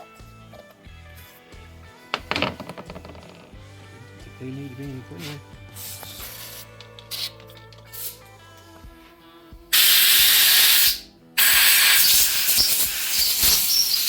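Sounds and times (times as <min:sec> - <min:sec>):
spray nozzle hissing: 0:05.8 - 0:08.2, 0:09.8 - 0:14.0.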